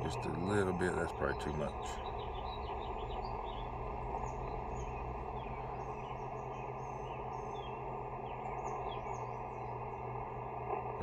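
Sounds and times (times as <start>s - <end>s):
radio static hiss: 0.0s - 2.0s
faint bird chirps: 0.0s - 11.0s.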